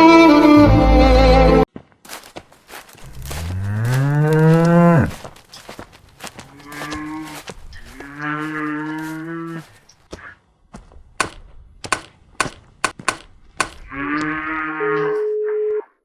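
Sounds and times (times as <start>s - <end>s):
cow mooing: 3.0s - 5.3s, 6.5s - 9.7s.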